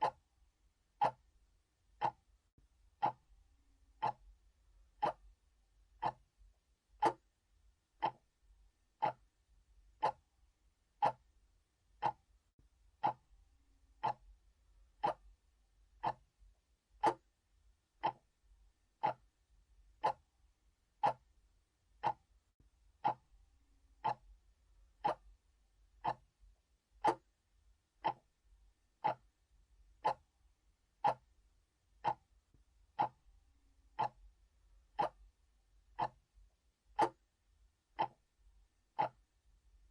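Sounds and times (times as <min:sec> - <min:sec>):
analog clock ticking: 0:00.0 - 0:00.2, 0:01.0 - 0:01.2, 0:02.0 - 0:02.3, 0:03.0 - 0:03.3, 0:04.0 - 0:05.4, 0:06.0 - 0:06.3, 0:07.0 - 0:07.3, 0:08.0 - 0:08.3, 0:09.0 - 0:10.3, 0:11.0 - 0:11.4, 0:12.0 - 0:12.3, 0:13.0 - 0:13.3, 0:14.0 - 0:14.4, 0:15.0 - 0:15.4, 0:16.0 - 0:16.3, 0:17.0 - 0:17.3, 0:18.0 - 0:18.3, 0:19.0 - 0:19.4, 0:20.0 - 0:20.3, 0:21.0 - 0:21.3, 0:22.0 - 0:22.3, 0:23.0 - 0:23.4, 0:24.0 - 0:24.4, 0:25.0 - 0:25.4, 0:26.0 - 0:26.4, 0:27.0 - 0:27.4, 0:28.0 - 0:28.4, 0:29.0 - 0:29.4, 0:30.0 - 0:30.3, 0:31.0 - 0:31.4, 0:32.0 - 0:32.3, 0:32.9 - 0:33.3, 0:33.9 - 0:36.3, 0:36.9 - 0:37.3, 0:37.9 - 0:38.3, 0:38.9 - 0:39.3.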